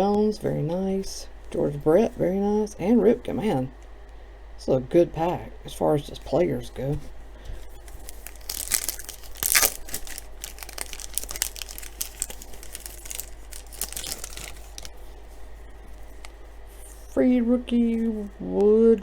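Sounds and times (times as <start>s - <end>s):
foil wrapper tearing and crinkling: 7.8s - 15.0s.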